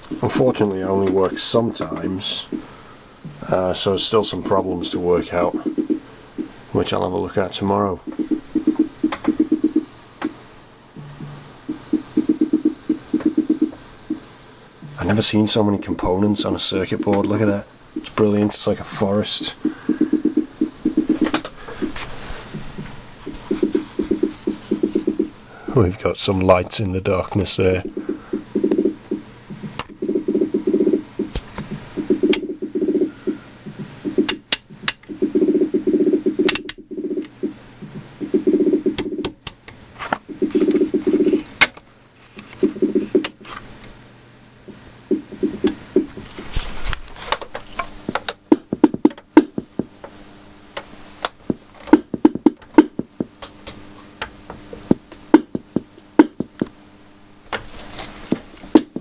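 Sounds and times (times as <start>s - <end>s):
drum machine rhythm: 0.0s - 0.6s, 1.6s - 3.8s, 4.9s - 6.6s, 8.0s - 9.9s, 11.0s - 15.2s, 18.0s - 18.4s, 19.1s - 25.4s, 27.8s - 39.4s, 40.2s - 41.5s, 42.6s - 43.4s, 45.0s - 46.3s, 48.0s - 50.0s, 51.3s - 53.5s, 54.8s - 56.8s, 58.7s - 59.0s
steady hum: 0.0s - 59.0s.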